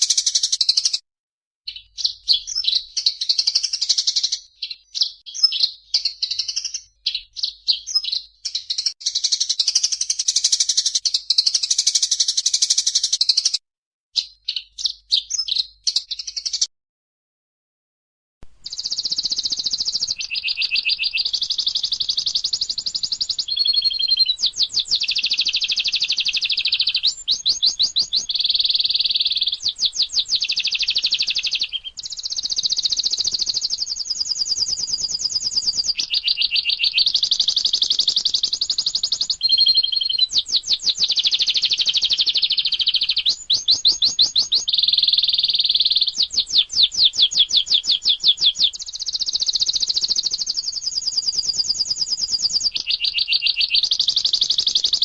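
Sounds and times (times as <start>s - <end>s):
songbirds trilling and chipping: 18.6s - 55.0s.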